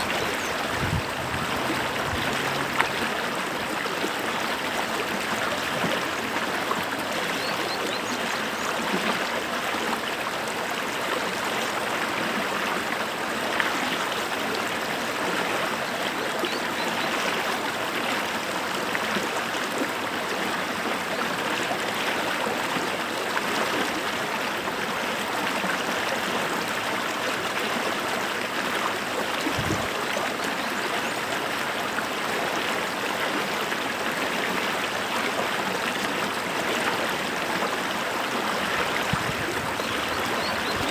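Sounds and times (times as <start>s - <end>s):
stream water rushing and trickling: 0.0s - 40.9s.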